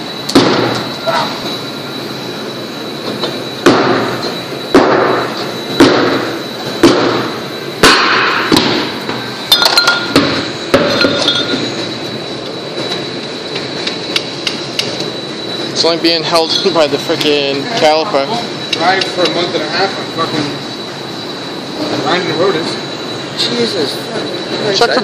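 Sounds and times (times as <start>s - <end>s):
hammer striking metal: 3.6s - 6.2s, 6.8s - 11.6s.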